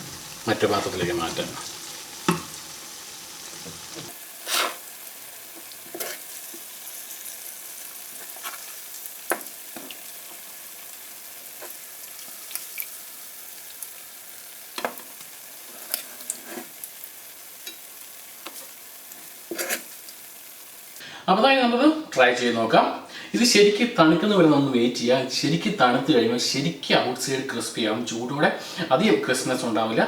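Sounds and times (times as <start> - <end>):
food deep-frying in hot oil: 0.0 - 21.0.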